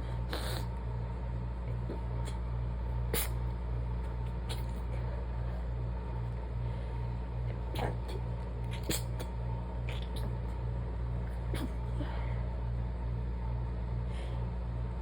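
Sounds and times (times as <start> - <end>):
steady low hum: 0.0 - 15.0
stifled sneezes: 3.1 - 3.4, 7.6 - 9.3, 11.3 - 12.1.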